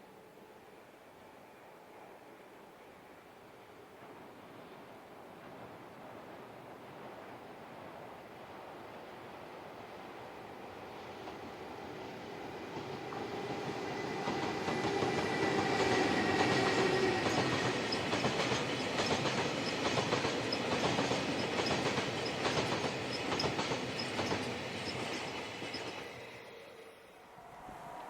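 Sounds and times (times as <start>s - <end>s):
electric locomotive whine: 0.0s - 28.0s
train wheels clicking over rail joints: 12.7s - 26.2s.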